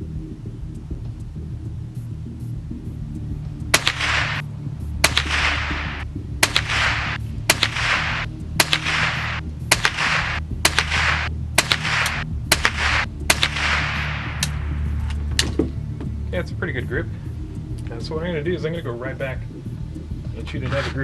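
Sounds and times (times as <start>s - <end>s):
background music: 0.0s - 21.0s
rifle shots with echo: 3.7s - 4.4s, 5.0s - 14.8s.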